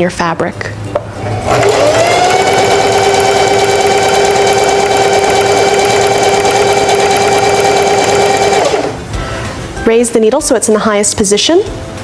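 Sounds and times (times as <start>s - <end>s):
sewing machine motor humming: 1.4s - 9.1s.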